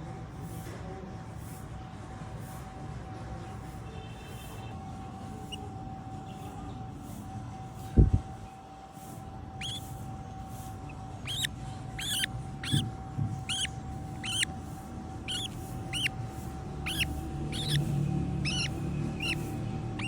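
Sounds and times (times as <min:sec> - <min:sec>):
small animal squeaking: 0:09.6 - 0:20.0.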